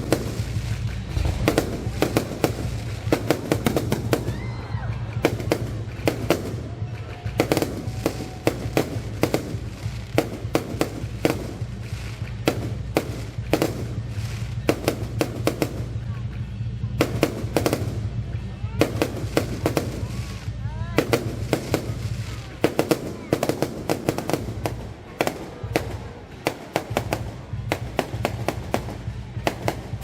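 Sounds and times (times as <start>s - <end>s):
fireworks bangs: 0.0s - 30.0s
low rumble: 0.8s - 6.0s.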